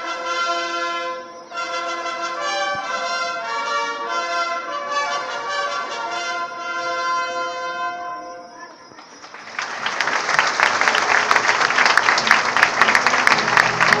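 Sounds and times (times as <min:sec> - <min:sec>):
held trumpet chord: 0:00.0 - 0:08.5
crowd clapping and shouting: 0:09.0 - 0:14.0.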